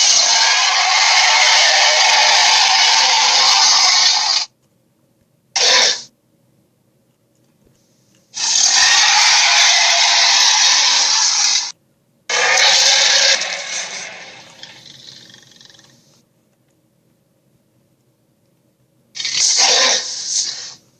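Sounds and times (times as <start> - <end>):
harsh hissing dinosaur calls: 0.0 - 4.5, 5.6 - 6.1, 8.4 - 11.7, 12.3 - 16.1, 19.2 - 20.9.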